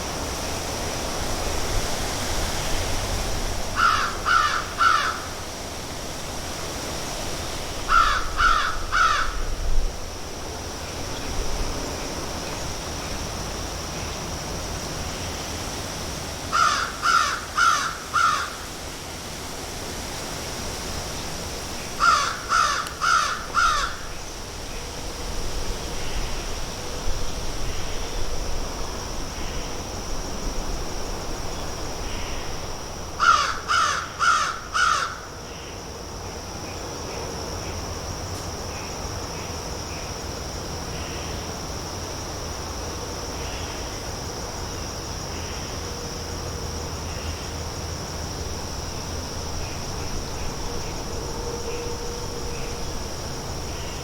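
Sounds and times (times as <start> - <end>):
crickets droning: 0.0 - 54.0
crows cawing: 3.8 - 5.3, 7.9 - 9.4, 16.5 - 18.6, 22.0 - 24.1, 33.2 - 35.2.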